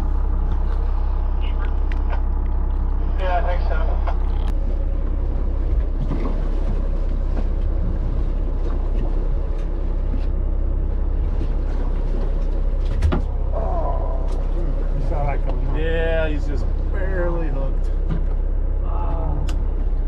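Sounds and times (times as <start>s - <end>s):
boat engine droning: 0.0s - 20.0s.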